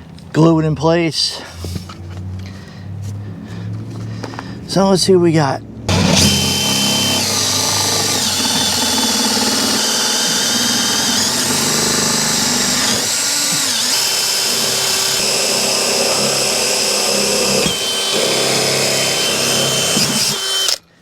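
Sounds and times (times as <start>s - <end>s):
power drill boring into wood: 5.9s - 20.8s.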